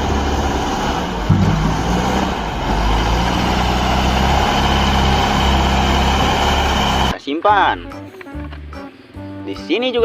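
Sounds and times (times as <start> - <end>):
truck engine idling: 0.0 - 7.1.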